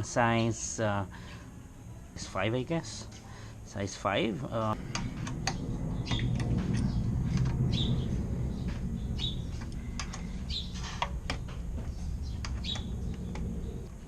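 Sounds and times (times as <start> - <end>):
low rumble: 4.7 - 14.0
small bird chirping: 5.5 - 13.9
sharp clicks: 12.4 - 13.6.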